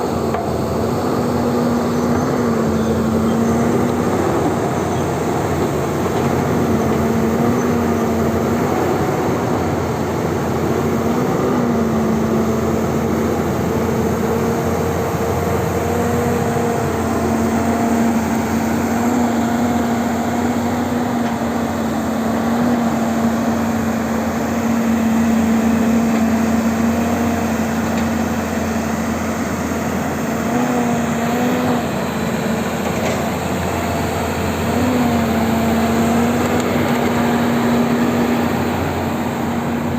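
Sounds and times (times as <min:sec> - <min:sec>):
excavator diesel engine and hydraulics: 0:00.0 - 0:39.9.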